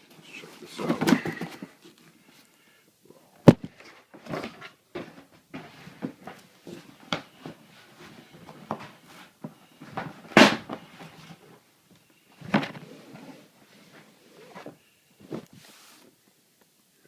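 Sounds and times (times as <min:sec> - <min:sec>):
cardboard scraping and rustling: 0:00.7 - 0:01.9, 0:03.8 - 0:11.5, 0:12.4 - 0:16.2.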